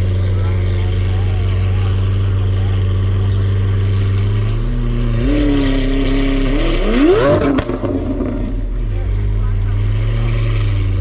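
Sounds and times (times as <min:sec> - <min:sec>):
car engine revving: 0:00.0 - 0:11.0
exhaust cracks: 0:00.0 - 0:11.0.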